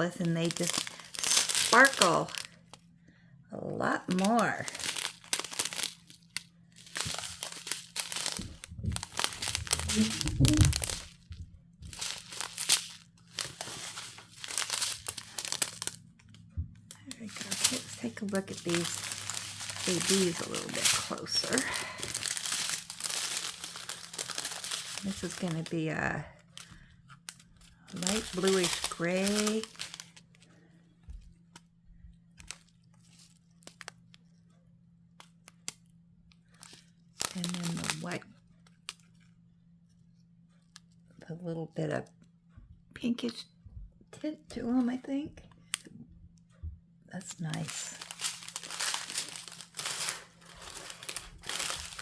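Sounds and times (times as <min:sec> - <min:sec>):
plastic bags crinkling: 0:00.0 - 0:02.9, 0:03.8 - 0:31.6, 0:32.3 - 0:34.2, 0:36.4 - 0:39.3, 0:47.2 - 0:52.0.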